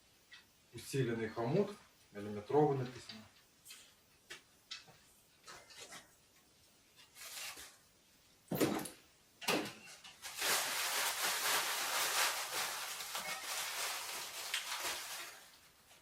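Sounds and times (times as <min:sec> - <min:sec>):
packaging rustling: 0:10.2 - 0:16.0.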